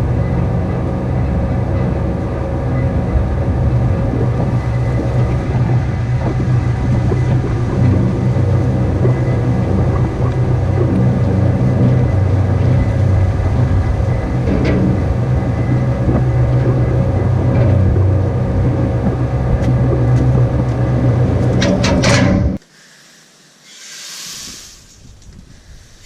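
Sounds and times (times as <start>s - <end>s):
machine engine droning: 0.0s - 22.6s.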